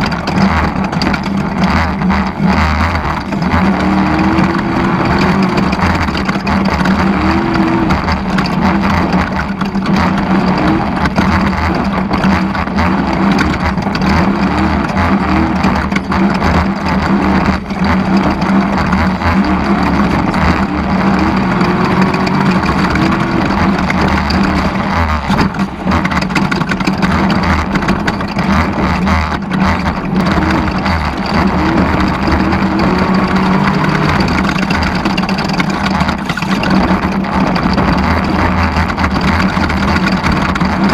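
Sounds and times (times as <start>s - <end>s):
race vehicle engine running hard: 0.0s - 40.9s
steady rush of noise: 0.0s - 40.9s.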